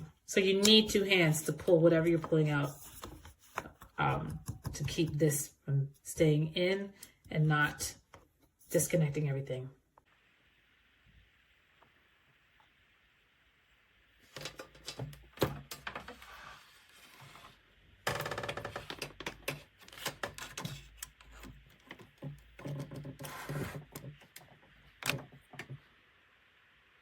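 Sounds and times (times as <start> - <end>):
plastic clicks and rattles: 14.3 - 16.2, 18.1 - 25.8.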